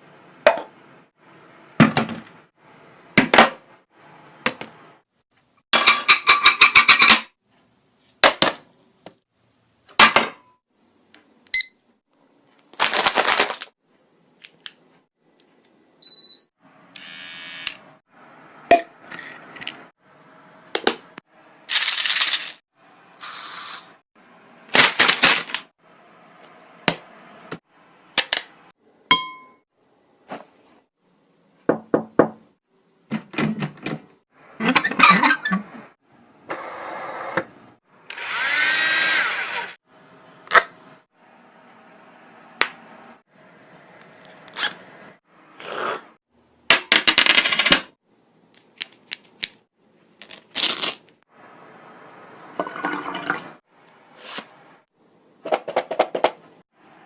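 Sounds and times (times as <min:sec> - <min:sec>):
hissy vocal sound effects: 0:45.6 - 0:46.2.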